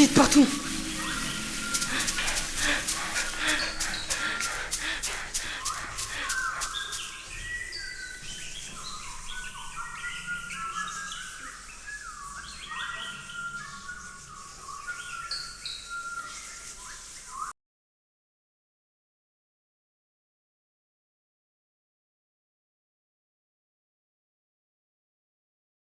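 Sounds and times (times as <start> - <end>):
bird-like chirps and whistles: 0.0 - 17.5.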